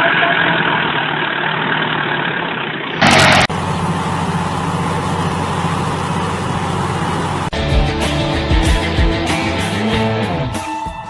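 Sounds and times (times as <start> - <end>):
heavy machine engine running: 0.0 - 10.3
loud burst of noise: 2.6 - 7.5.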